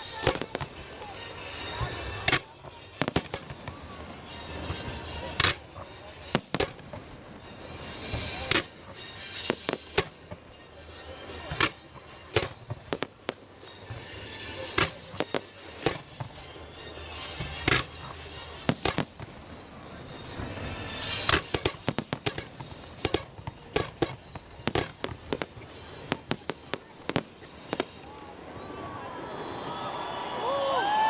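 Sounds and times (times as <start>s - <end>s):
firework crackle: 0.0s - 31.0s
firework shells bursting: 17.6s - 19.6s, 20.2s - 28.2s.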